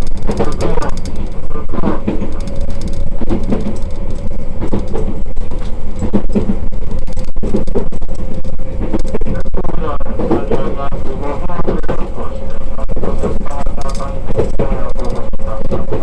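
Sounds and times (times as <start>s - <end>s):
train low rumble: 0.0s - 16.0s
train whine: 0.0s - 16.0s.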